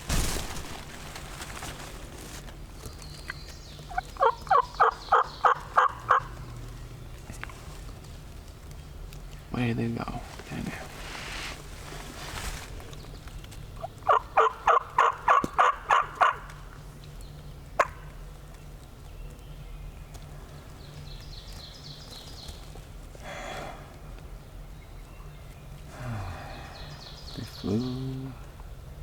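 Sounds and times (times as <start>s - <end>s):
wild turkey yelping: 3.9s - 6.4s, 13.8s - 16.7s, 17.8s - 18.0s.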